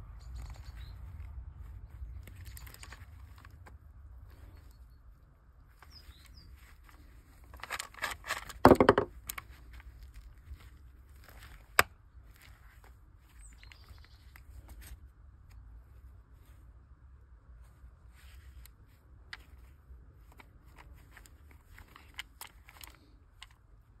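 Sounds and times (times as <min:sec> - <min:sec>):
faint bird chirps: 0:00.0 - 0:02.9, 0:04.2 - 0:06.8, 0:13.2 - 0:14.5
rustling and rattling: 0:00.3 - 0:04.9, 0:05.6 - 0:16.6, 0:17.6 - 0:23.9.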